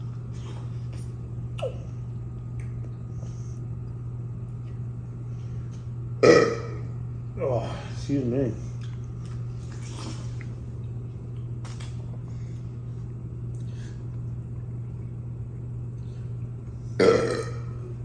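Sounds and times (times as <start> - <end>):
faint eating noises: 0.0 - 18.0
low room hum: 0.0 - 18.0
loud burp: 6.2 - 6.9, 17.0 - 17.8.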